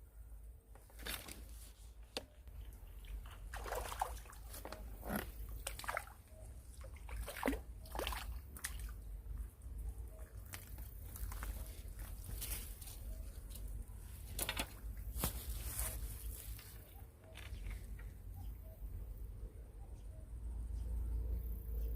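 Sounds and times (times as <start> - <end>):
water splashing and sloshing: 0.9 - 17.9.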